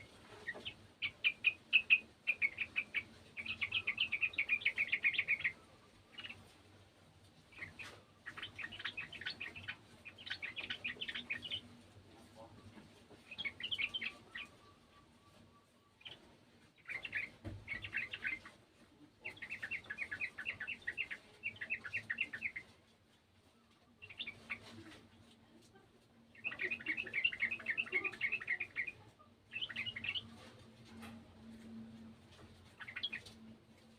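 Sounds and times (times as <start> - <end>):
bird chattering song: 0.0 - 6.4, 7.5 - 11.7, 13.3 - 14.6, 16.8 - 18.5, 19.2 - 22.6, 24.0 - 24.9, 26.4 - 30.4, 32.7 - 33.5.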